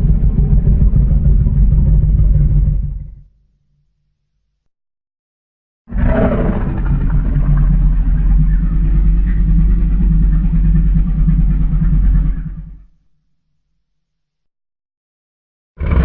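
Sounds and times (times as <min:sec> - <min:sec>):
deep loud rumble: 0:00.0 - 0:03.3, 0:05.9 - 0:13.0.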